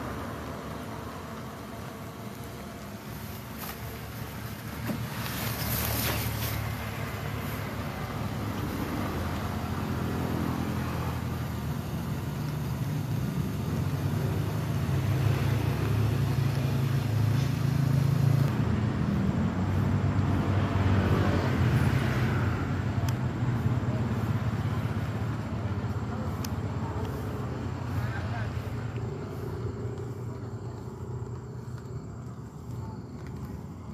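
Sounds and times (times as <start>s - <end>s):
road and wind noise: 0.0s - 33.9s
traffic engine hum: 0.0s - 33.9s.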